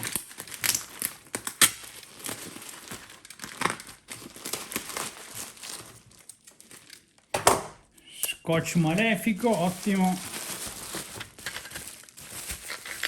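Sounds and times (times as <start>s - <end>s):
packing tape tearing: 0.0s - 7.0s, 8.8s - 13.0s
wrapping crinkling: 0.0s - 7.3s, 8.4s - 13.0s.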